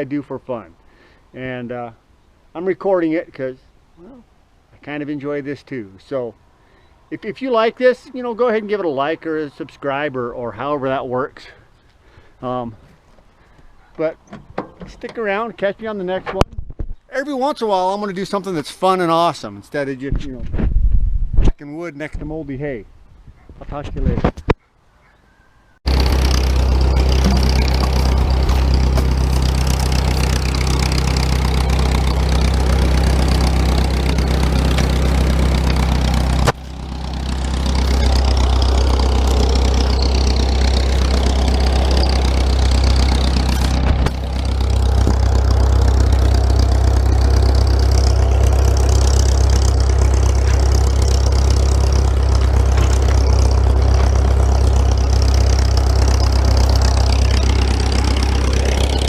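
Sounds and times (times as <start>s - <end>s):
engine idling: 25.8s - 59.0s.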